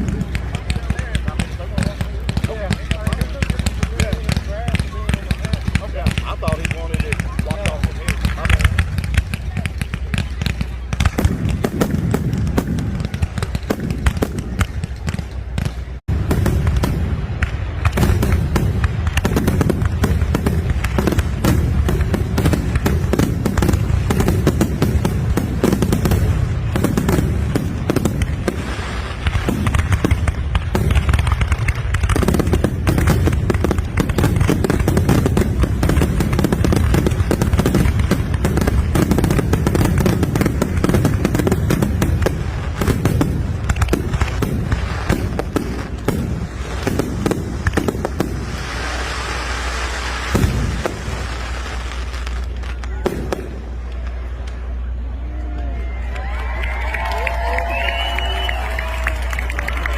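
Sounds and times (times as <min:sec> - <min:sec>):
fireworks bangs and crackles: 0:00.0 - 0:59.9.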